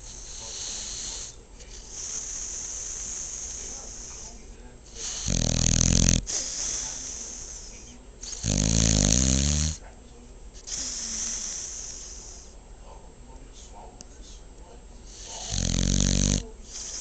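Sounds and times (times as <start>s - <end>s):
dog snoring loudly: 0.0s - 4.3s, 4.9s - 9.8s, 10.6s - 12.4s, 15.1s - 17.0s
breathy hissing: 0.0s - 9.8s, 10.6s - 12.6s, 15.0s - 17.0s.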